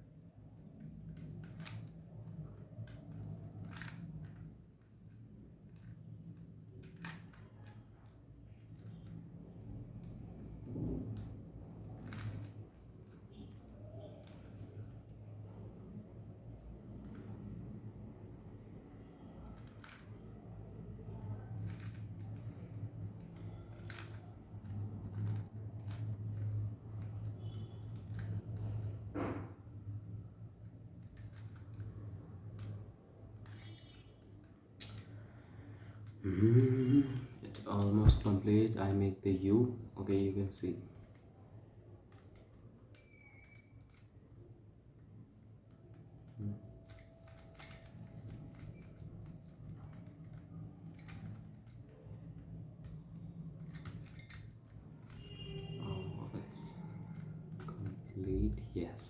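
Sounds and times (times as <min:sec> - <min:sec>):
plastic cube clicks and rattles: 0:10.5 - 0:13.2, 0:21.2 - 0:28.7.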